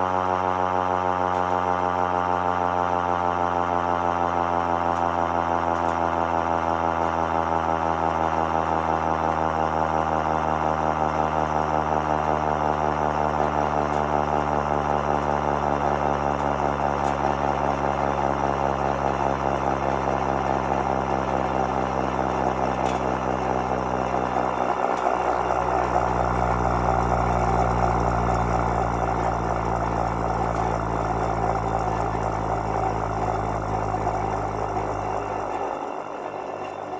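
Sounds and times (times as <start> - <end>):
deep motor hum: 0.0 - 36.9
siren wailing: 6.5 - 36.9.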